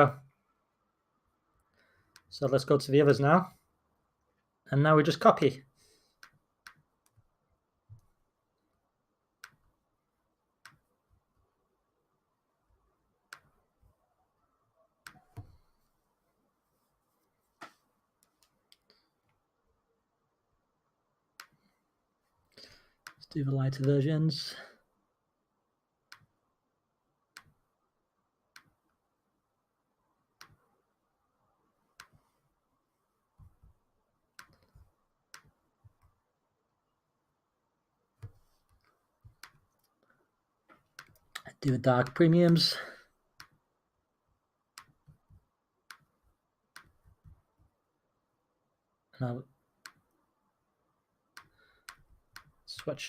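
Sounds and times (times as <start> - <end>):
computer mouse clicks: 9.4 - 9.6, 15.0 - 15.7, 21.4 - 21.7, 27.3 - 27.6, 32.0 - 32.2, 34.4 - 36.1, 38.2 - 40.0, 40.7 - 42.7, 43.4 - 43.6, 44.7 - 47.7, 49.8 - 50.2, 51.3 - 52.6
mouse and keyboard clicks: 40.7 - 42.6.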